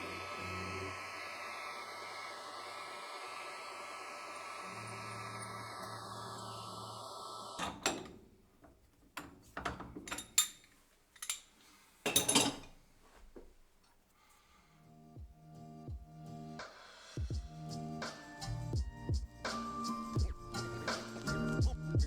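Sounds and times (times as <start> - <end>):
milling machine motor running: 0.0 - 7.6.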